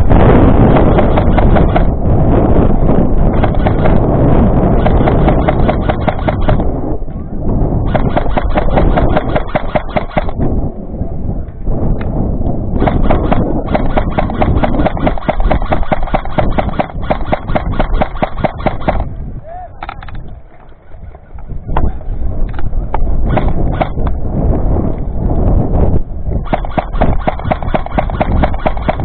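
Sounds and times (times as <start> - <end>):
handling rumble: 0.0 - 18.1, 19.0 - 29.0
wind on microphone: 0.0 - 29.0
airsoft guns firing full-auto: 0.7 - 1.9, 3.3 - 4.1, 4.7 - 6.7, 7.9 - 10.4, 12.8 - 19.0, 26.4 - 29.0.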